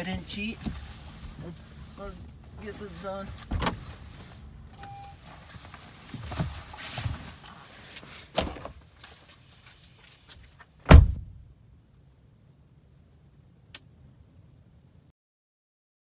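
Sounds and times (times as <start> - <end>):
shuffling: 0.0 - 10.8
car door slamming: 3.4 - 4.0, 8.4 - 8.8, 10.9 - 11.5
car door click: 10.9 - 11.4.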